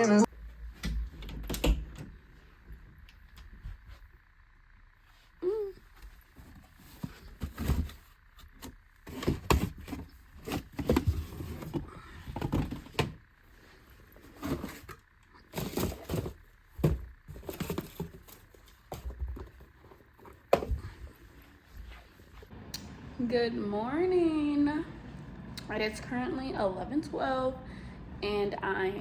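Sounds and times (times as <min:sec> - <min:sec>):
objects knocking and thudding: 0:06.4 - 0:13.2, 0:14.2 - 0:21.2.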